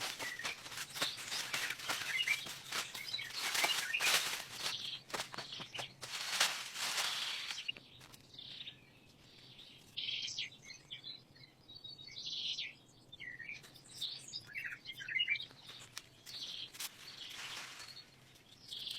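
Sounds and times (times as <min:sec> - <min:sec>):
rustling noise: 0:00.0 - 0:08.2, 0:16.7 - 0:18.5
small birds chirping: 0:00.0 - 0:18.9.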